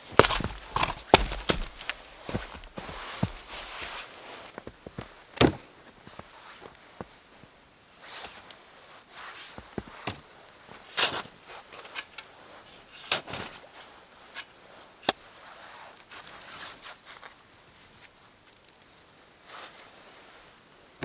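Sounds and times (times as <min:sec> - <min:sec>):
crunching rustles: 0:00.0 - 0:05.4.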